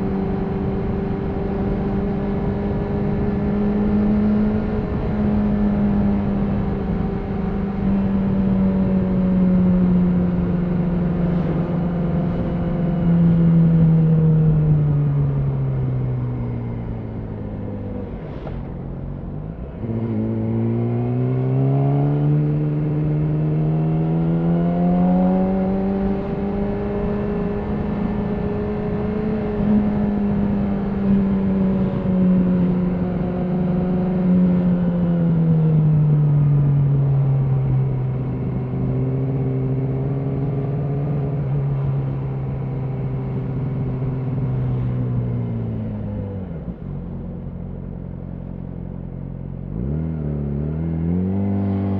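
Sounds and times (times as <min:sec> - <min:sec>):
motorcycle engine accelerating: 0:00.0 - 0:51.9.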